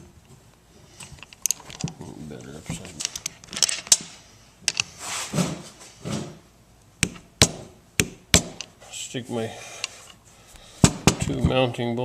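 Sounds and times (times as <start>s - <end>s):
metal parts clicking and knocking: 1.0s - 2.0s, 2.6s - 4.1s, 4.7s - 4.9s, 8.3s - 8.8s.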